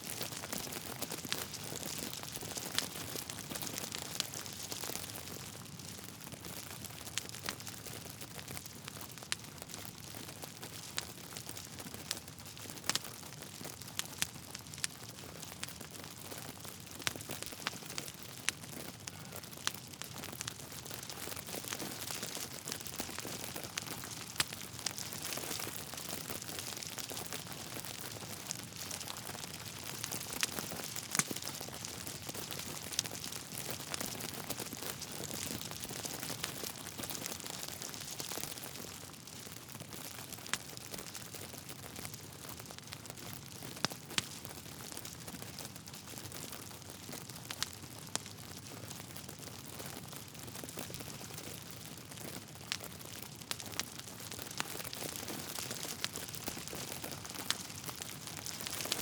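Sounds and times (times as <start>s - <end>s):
fire crackling: 0.0s - 59.0s
sharp pops of burning logs: 17.0s - 38.4s, 53.4s - 59.0s.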